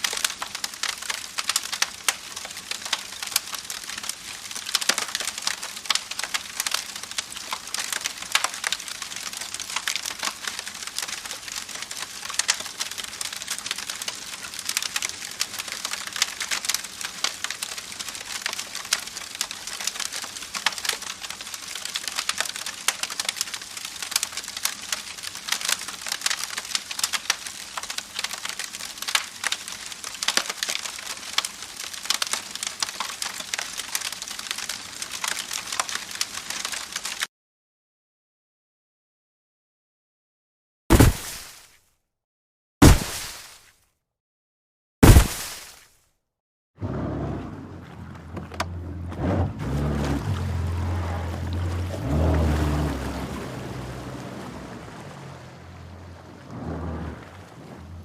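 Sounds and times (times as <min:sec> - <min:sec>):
campfire crackling and popping: 0:00.0 - 0:37.3.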